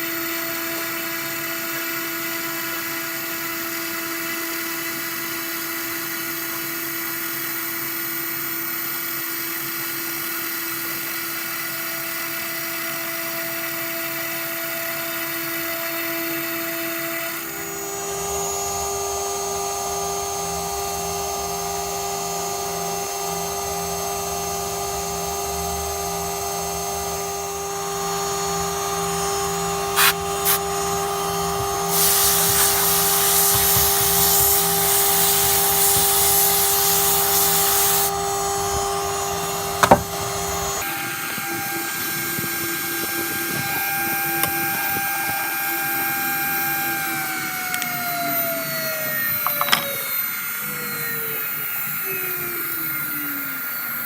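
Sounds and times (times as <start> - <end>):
cnc router motors whining: 0.0 - 54.0
loud hiss: 29.8 - 47.7.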